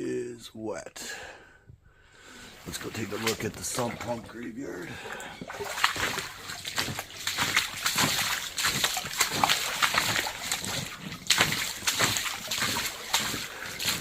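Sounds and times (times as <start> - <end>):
boots splashing through water: 2.6 - 14.0.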